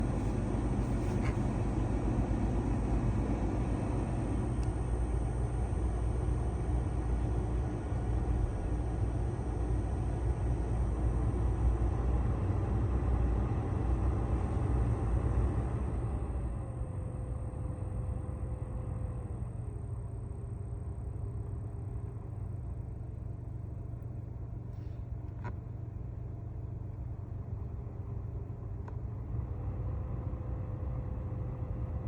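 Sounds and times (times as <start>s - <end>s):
blower motor whine: 0.0s - 23.4s
low car rumble: 0.0s - 32.0s.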